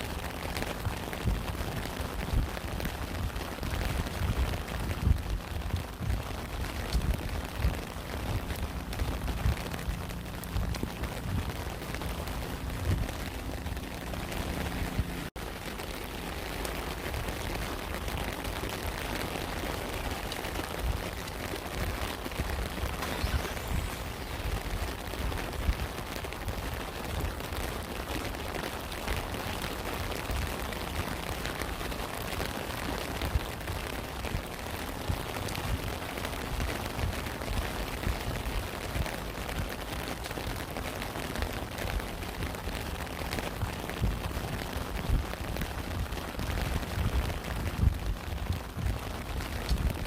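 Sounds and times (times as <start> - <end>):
low rumble: 0.0 - 27.6
steady rain: 0.0 - 50.0.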